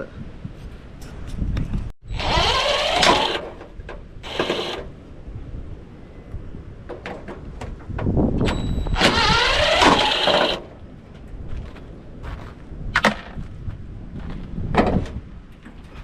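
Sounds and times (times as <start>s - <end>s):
metal screeching and creaking: 2.1s - 3.6s, 4.2s - 4.9s, 8.9s - 10.7s.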